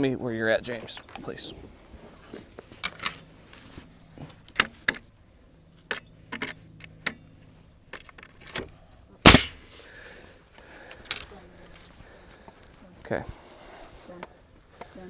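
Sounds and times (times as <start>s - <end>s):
loud bang: 9.3s - 9.5s.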